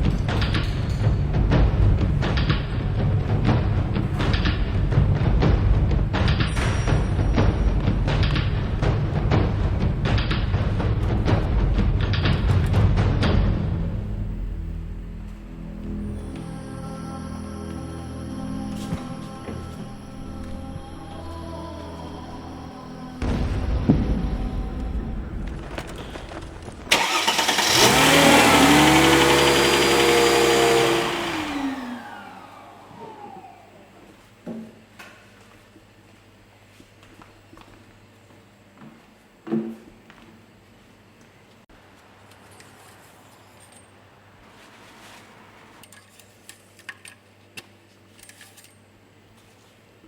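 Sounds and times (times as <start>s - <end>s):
car engine revving: 25.5s - 33.6s.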